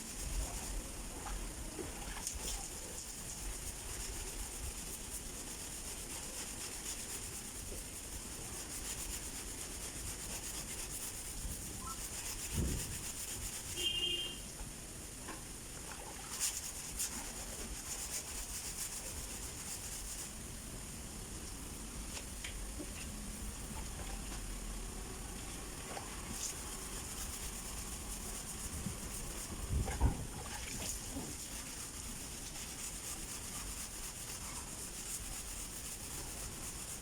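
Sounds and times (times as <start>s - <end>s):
sandpaper rubbing on car panel: 0.0s - 0.8s, 2.7s - 14.4s, 16.4s - 20.4s, 26.3s - 30.0s, 30.8s - 37.0s.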